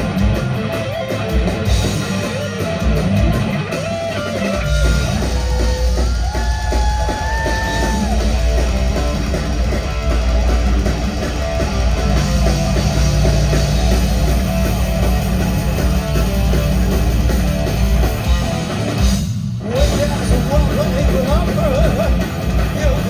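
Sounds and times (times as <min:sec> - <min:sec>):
rock band playing: 0:00.0 - 0:23.0.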